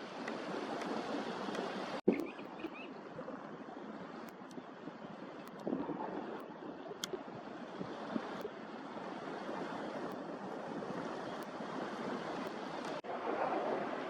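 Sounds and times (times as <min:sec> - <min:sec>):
sea surf washing on shore: 0:00.0 - 0:14.0
faint ticks: 0:04.2 - 0:04.7, 0:05.3 - 0:05.8, 0:06.4 - 0:07.2.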